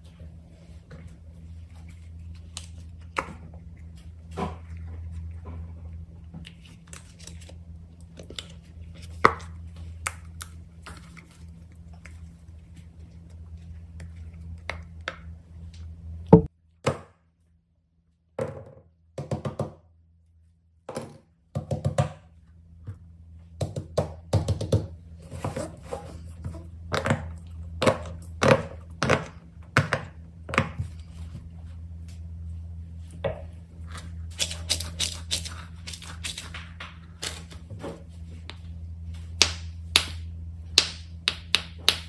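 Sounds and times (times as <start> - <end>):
steady low hum: 0.0 - 19.2, 19.8 - 42.0.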